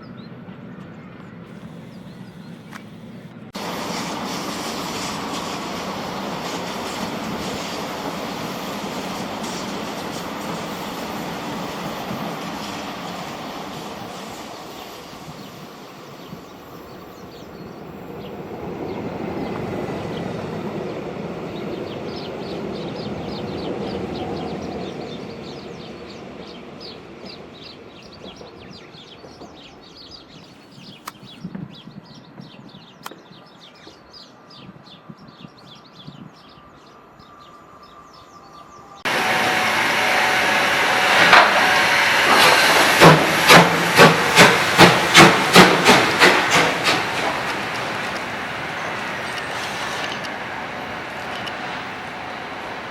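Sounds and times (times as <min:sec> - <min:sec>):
loud close train noise: 0:00.0 - 0:33.0, 0:36.0 - 0:52.9
passing train rumble: 0:00.0 - 0:33.0, 0:36.2 - 0:52.9
wheel clacks over rail joints: 0:42.3 - 0:48.4.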